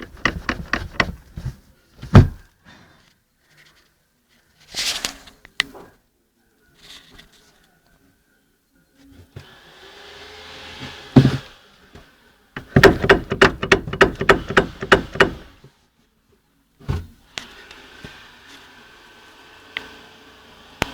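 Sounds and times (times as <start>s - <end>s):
car wheel knocking: 0.0s - 1.3s, 12.6s - 15.5s.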